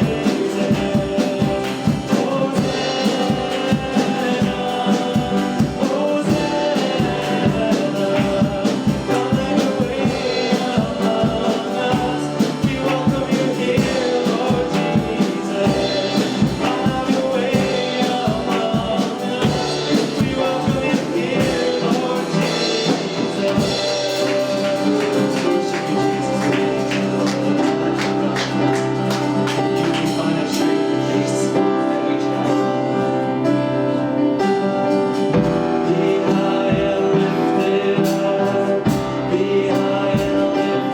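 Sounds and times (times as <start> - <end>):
worship song with band: 0.0 - 40.9.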